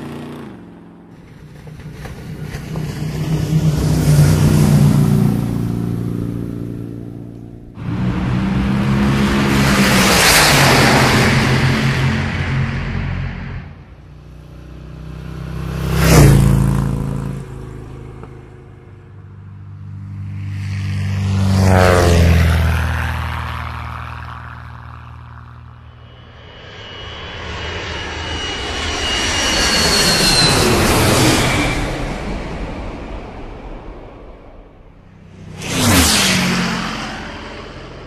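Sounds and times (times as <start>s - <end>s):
vehicles passing by: 0.0s - 38.0s
high whining tones: 24.6s - 32.5s.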